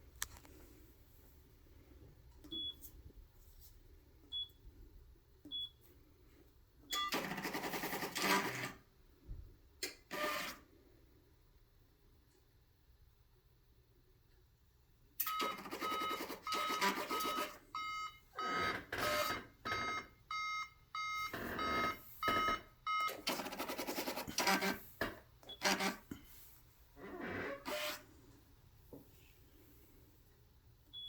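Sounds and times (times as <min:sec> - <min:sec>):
short electronic beeps: 0:15.2 - 0:23.2.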